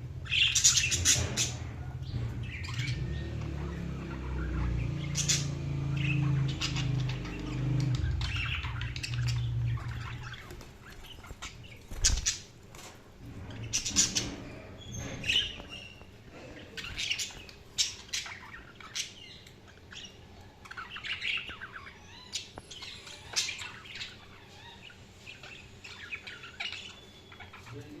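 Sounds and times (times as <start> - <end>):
budgerigars chirping and squawking: 0.0 - 28.0
low steady hum: 0.0 - 28.0.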